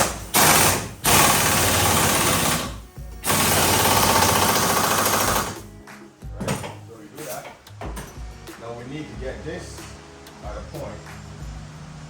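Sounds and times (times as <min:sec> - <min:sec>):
pneumatic air tool hammering: 0:00.0 - 0:05.6.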